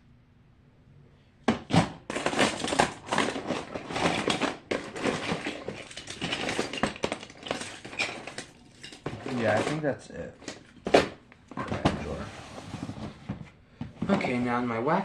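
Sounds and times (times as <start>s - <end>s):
plastic toys clattering: 1.5s - 12.2s.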